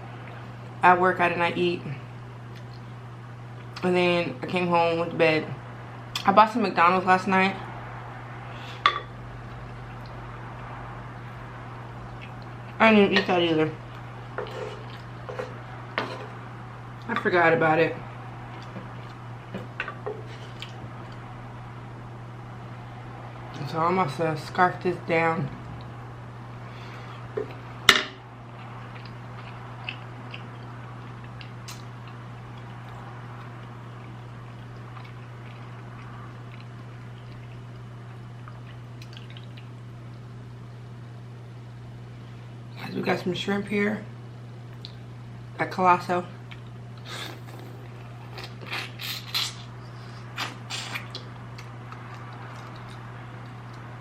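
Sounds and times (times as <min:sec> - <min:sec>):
steady low hum: 0:00.0 - 0:54.0
person chewing food: 0:12.0 - 0:12.8, 0:13.9 - 0:16.4, 0:18.5 - 0:21.3, 0:28.4 - 0:40.2, 0:46.5 - 0:53.9.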